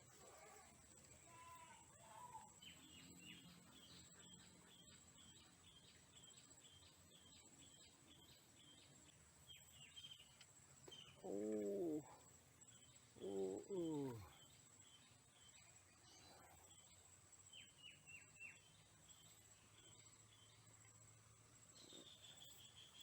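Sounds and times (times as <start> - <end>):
faint bird calling: 10.8 - 14.5.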